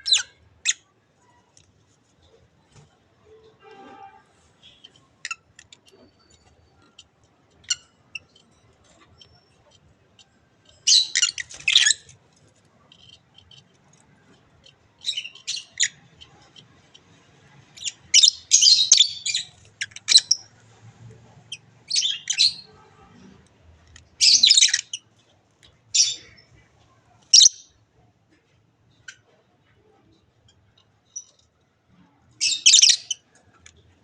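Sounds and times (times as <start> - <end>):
parrots chirping and squawking: 0.0 - 0.8, 10.8 - 12.1, 12.9 - 23.4, 24.0 - 25.0, 27.3 - 27.6, 32.4 - 33.3.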